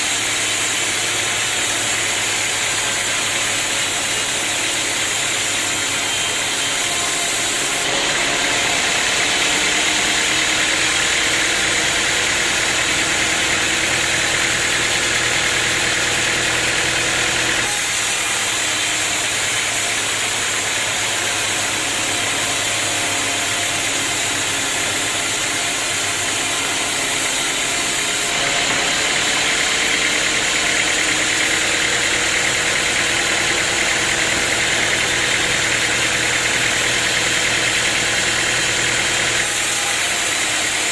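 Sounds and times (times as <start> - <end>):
sawmill machinery droning: 0.0 - 40.9.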